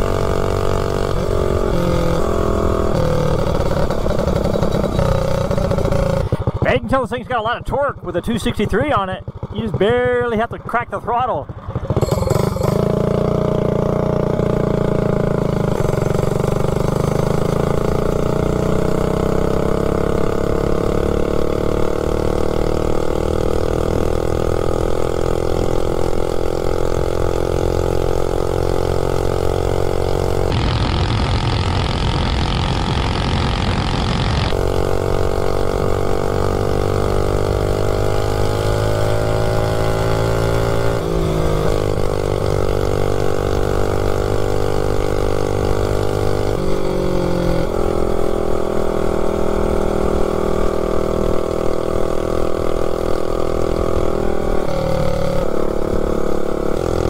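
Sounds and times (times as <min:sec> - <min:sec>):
mini bike engine running: 0:00.0 - 0:57.0
rushing noise: 0:30.5 - 0:34.6.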